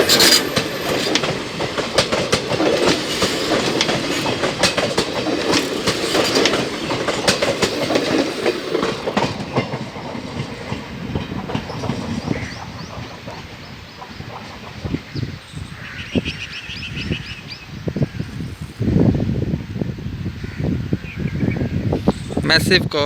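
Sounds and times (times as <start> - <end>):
wheels clicking over rail joints: 0.0 - 14.9
train rumbling past: 0.0 - 16.1.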